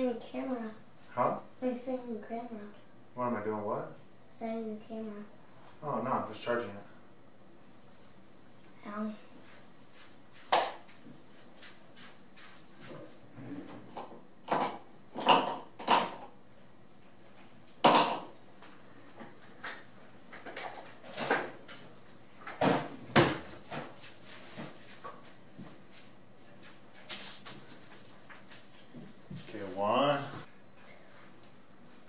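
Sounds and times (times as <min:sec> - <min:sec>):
objects knocking and clattering: 0:13.7 - 0:16.4, 0:17.8 - 0:18.4.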